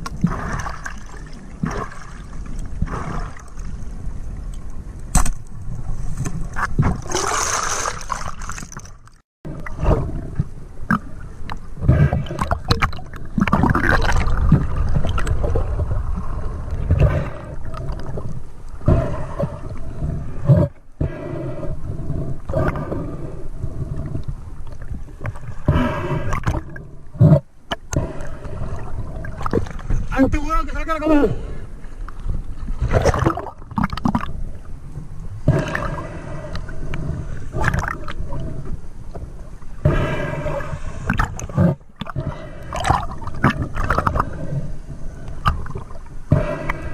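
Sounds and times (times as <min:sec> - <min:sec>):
water sloshing and gurgling: 0:00.0 - 0:46.9
low rumbling: 0:09.5 - 0:46.9.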